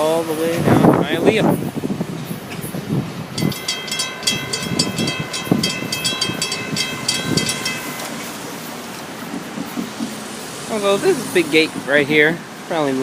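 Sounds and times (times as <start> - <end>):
freight train wheels thumping: 2.0 - 12.4
crossing bell ringing: 3.3 - 10.0.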